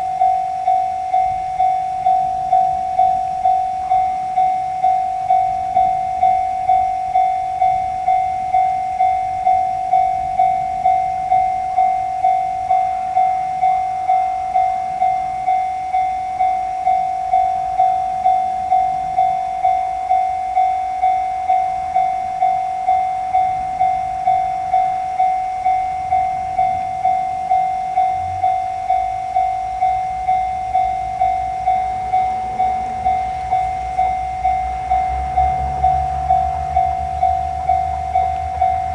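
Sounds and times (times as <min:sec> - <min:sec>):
level-crossing warning bell ringing: 0:00.0 - 0:38.9
train rumbling: 0:21.0 - 0:38.9.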